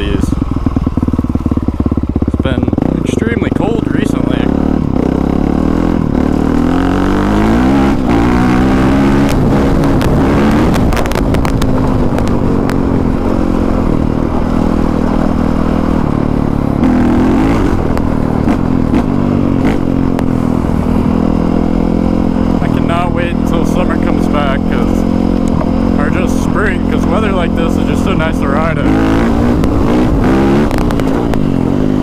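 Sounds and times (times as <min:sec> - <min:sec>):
dirt bike engine revving: 0:00.0 - 0:32.0
sharp clicks and clatter: 0:09.2 - 0:12.8, 0:29.4 - 0:31.6.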